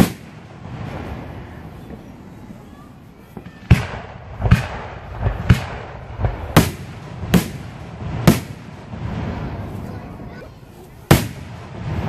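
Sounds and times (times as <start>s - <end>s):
fireworks bangs: 0.0s - 12.0s.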